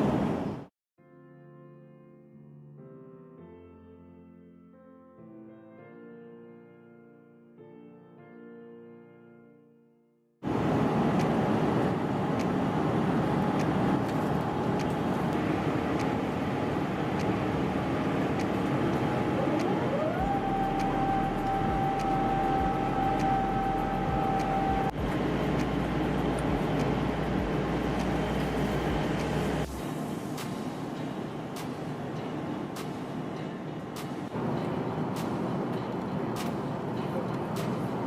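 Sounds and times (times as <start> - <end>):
jet engine roar in cabin: 0.0 - 0.7, 10.4 - 38.0
steady whine: 10.5 - 38.0.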